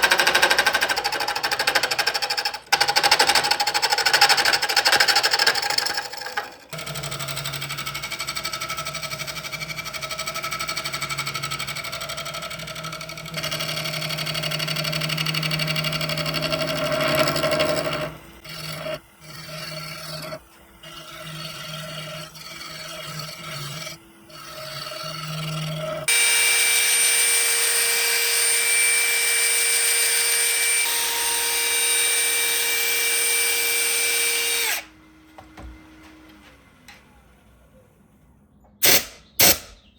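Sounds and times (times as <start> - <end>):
tool scraping spinning wood: 0.0 - 26.2
wood lathe motor hum: 0.0 - 38.0.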